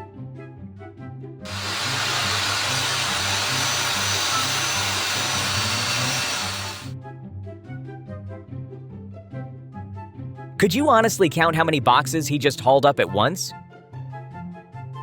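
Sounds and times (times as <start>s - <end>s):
loud rushing noise: 1.5s - 6.9s.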